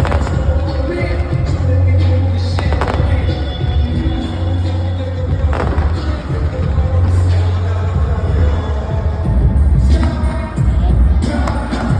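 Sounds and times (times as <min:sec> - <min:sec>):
fireworks bangs and crackles: 0:00.0 - 0:01.7, 0:02.6 - 0:04.4, 0:05.3 - 0:10.4
loud music with heavy bass: 0:00.0 - 0:11.9.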